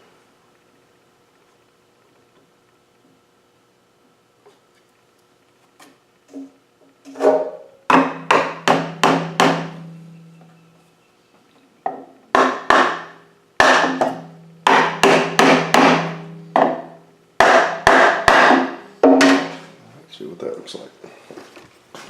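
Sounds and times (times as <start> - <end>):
hammer blows on wood: 7.3 - 10.4, 12.4 - 19.7
low hum: 9.0 - 12.3, 16.0 - 17.4.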